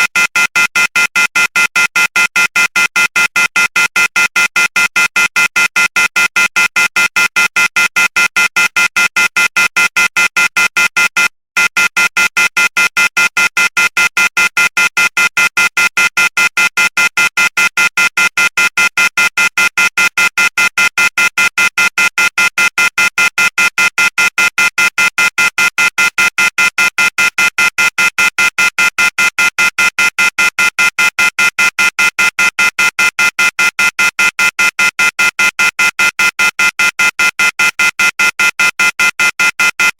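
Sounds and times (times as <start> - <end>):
two-pitched phone beeping: 7.3 - 14.7, 27.4 - 39.9.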